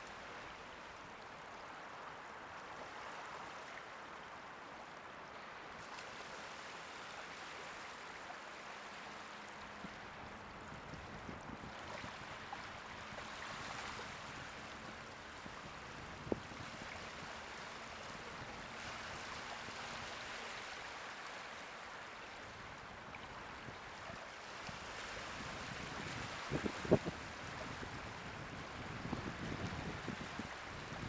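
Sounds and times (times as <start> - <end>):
waves washing on shore: 0.0 - 31.0.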